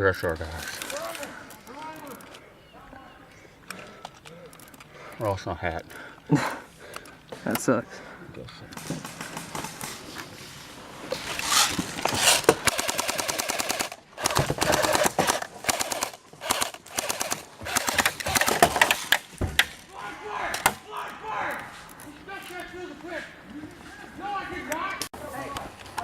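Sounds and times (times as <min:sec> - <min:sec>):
airsoft guns firing bursts: 0:08.8 - 0:10.0, 0:12.2 - 0:19.2.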